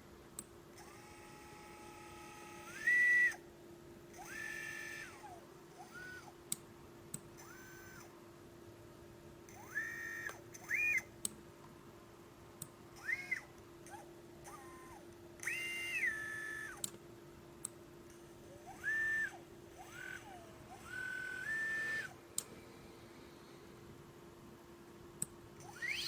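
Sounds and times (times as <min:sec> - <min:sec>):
drone motor whine: 0:00.8 - 0:03.4, 0:04.2 - 0:06.3, 0:07.4 - 0:08.1, 0:09.5 - 0:11.0, 0:13.0 - 0:16.8, 0:18.5 - 0:23.6, 0:25.6 - 0:26.0.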